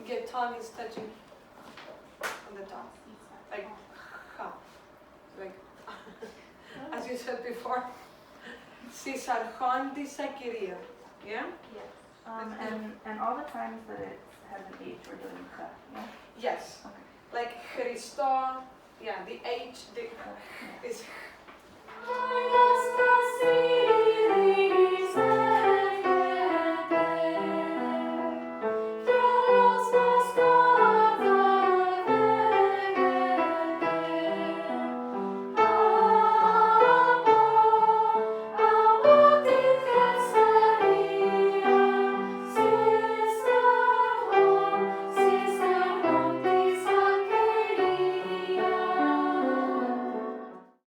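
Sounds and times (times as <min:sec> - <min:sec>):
voices singing: 0:21.9 - 0:50.6.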